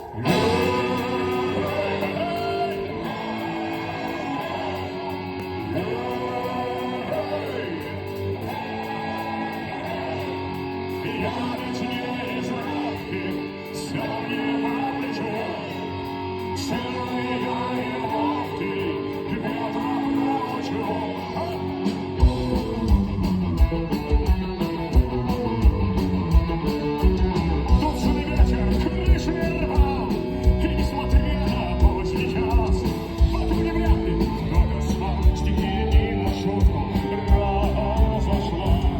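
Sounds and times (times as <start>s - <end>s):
rock music with singing: 0.0s - 38.9s
bass-heavy beat: 22.2s - 38.9s.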